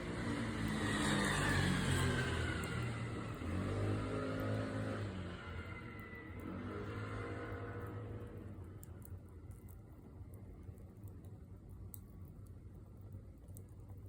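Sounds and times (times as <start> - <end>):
vehicle engine passing by: 0.0 - 8.7.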